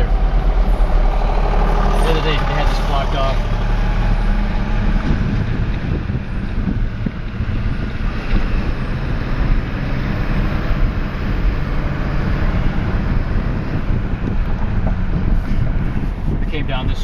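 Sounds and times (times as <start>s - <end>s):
road and wind noise: 0.0s - 17.0s
vehicle engine running: 0.0s - 17.0s.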